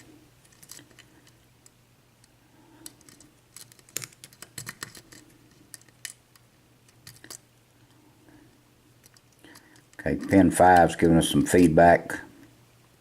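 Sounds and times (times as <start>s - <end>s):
lock pick clicking and scraping: 2.2s - 7.4s.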